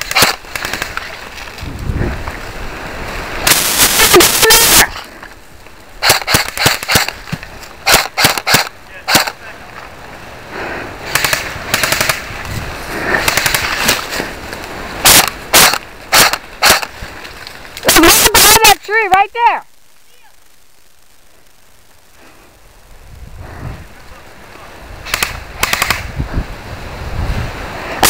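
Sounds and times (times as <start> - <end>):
airsoft guns firing: 0.0 - 1.0, 3.4 - 4.8, 6.0 - 9.4, 11.0 - 12.3, 13.1 - 14.0, 15.0 - 16.9, 25.0 - 26.1.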